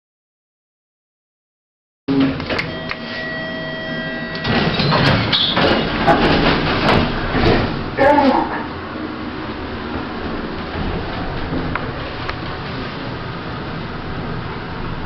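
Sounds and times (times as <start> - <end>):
lift doors sliding and rattling: 2.2 - 15.0.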